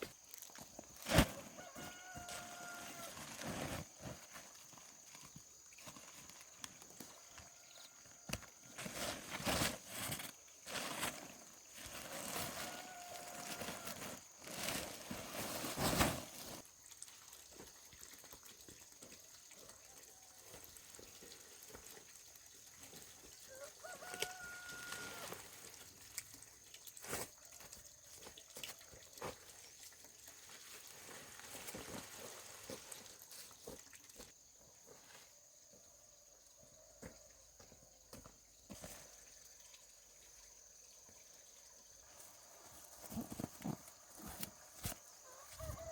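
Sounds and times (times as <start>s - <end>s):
rooster crowing faintly: 1.2s - 3.4s, 12.4s - 14.0s, 23.5s - 25.4s, 45.2s - 45.9s.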